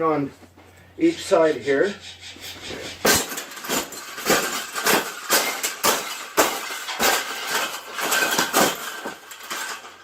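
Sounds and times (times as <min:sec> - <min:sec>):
wire cage clinking: 0:03.0 - 0:10.0.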